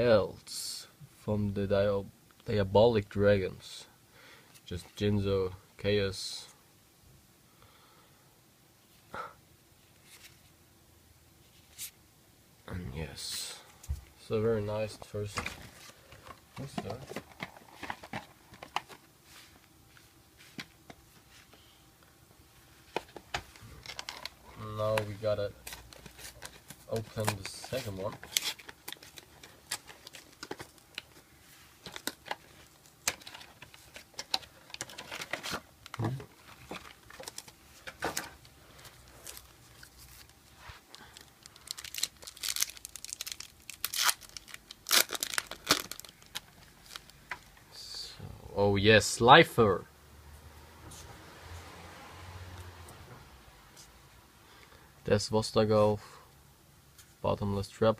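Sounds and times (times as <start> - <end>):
handling cards and packaging: 13.2 - 47.8
foil wrapper tearing and crinkling: 39.0 - 47.2.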